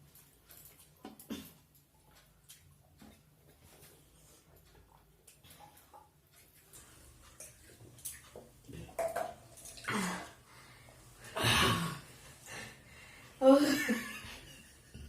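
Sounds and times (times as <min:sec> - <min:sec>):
breaths: 0:09.9 - 0:11.4, 0:12.3 - 0:13.4.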